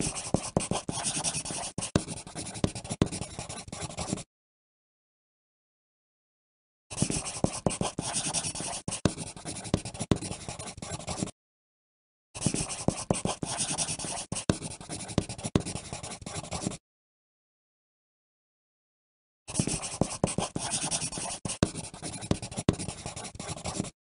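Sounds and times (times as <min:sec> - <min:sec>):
pencil writing on paper: 0:00.0 - 0:04.3, 0:06.9 - 0:11.4, 0:12.4 - 0:16.8, 0:19.5 - 0:24.0.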